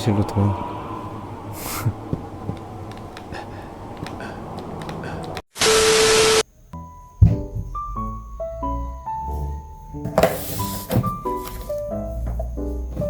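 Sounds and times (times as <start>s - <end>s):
hissing static: 0.0s - 6.5s
faint clicks: 4.0s - 5.4s
piano music: 6.8s - 13.0s.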